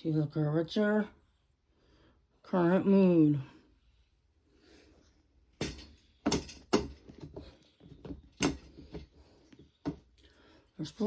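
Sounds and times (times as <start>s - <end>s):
boots knocking and clicking: 5.6s - 10.2s.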